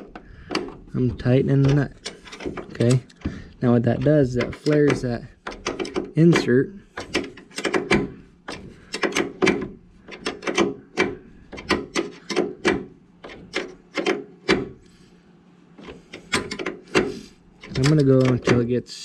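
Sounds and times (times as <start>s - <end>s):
wrench rasping clicks: 4.0s - 14.6s, 15.8s - 18.7s.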